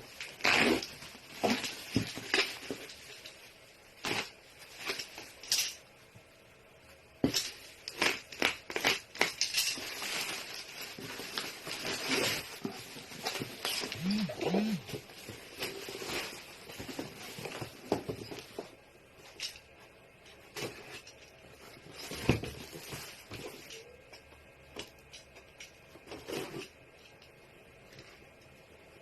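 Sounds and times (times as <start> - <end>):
short pitched sounds: 13.9 - 14.9.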